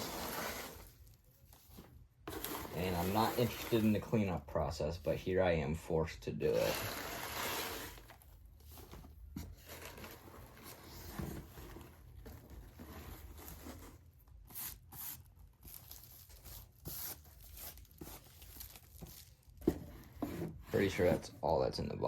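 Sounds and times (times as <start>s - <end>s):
shredded paper rustling: 0.0s - 1.2s, 2.3s - 4.1s.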